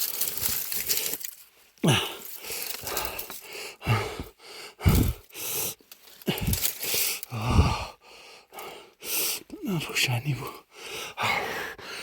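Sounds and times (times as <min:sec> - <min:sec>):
man gasping and moaning: 0:01.8 - 0:09.5, 0:10.6 - 0:12.0.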